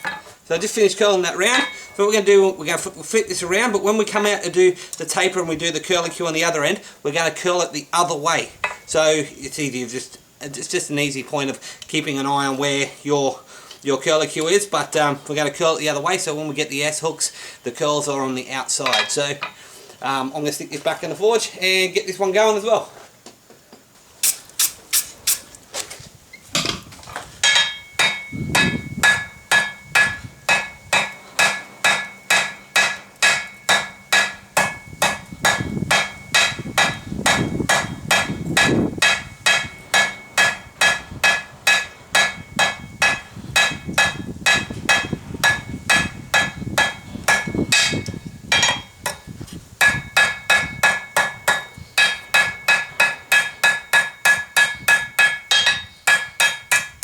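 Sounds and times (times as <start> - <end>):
hammer ringing on anvil: 1.4 - 2.4, 27.4 - 49.2, 49.8 - 57.0.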